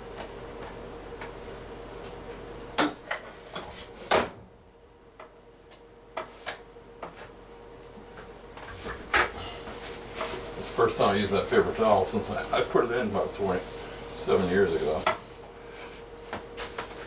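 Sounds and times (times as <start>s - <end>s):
faint hum: 0.0s - 17.0s.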